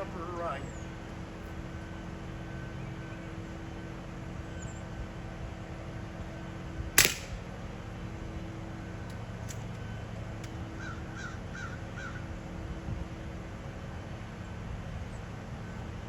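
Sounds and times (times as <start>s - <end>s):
air rifle shot: 7.0s - 7.5s.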